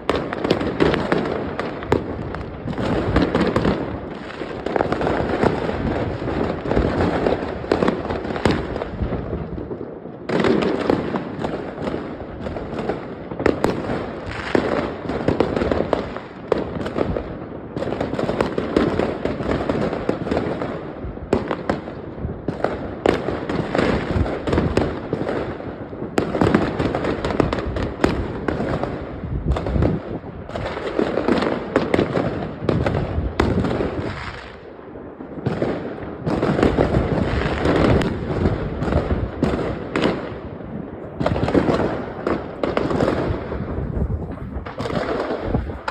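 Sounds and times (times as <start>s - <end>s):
fireworks bangs and crackles: 0.0s - 45.9s.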